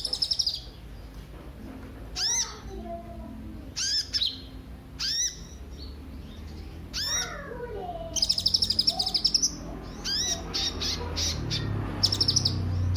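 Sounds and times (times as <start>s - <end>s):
bird rapid high trill: 3.8s - 5.8s, 6.9s - 7.4s, 8.2s - 12.7s.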